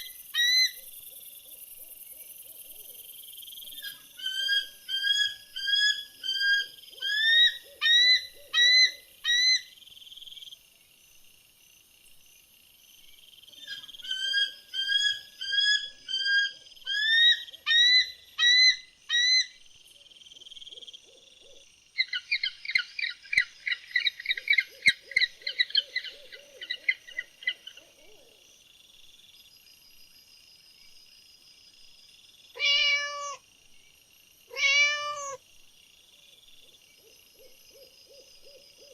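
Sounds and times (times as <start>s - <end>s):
lower bird call: 32.6s - 33.4s, 34.5s - 35.4s.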